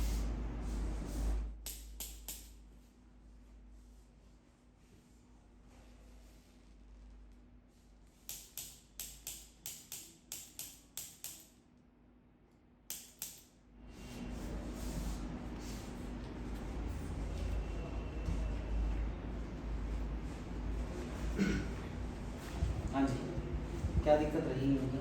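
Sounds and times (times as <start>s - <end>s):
rushing noise with low rumble: 21.9s - 25.0s.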